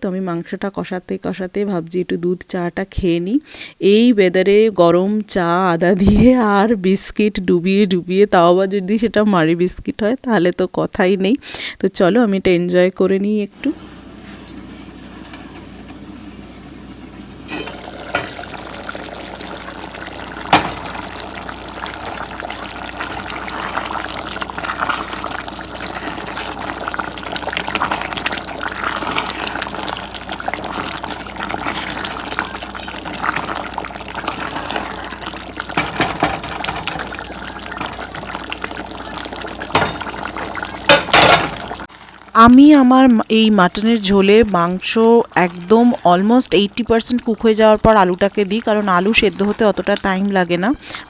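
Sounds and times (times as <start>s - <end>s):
meat frying sizzling: 13.6s - 51.0s
utensil knocking against pan: 39.7s - 40.1s.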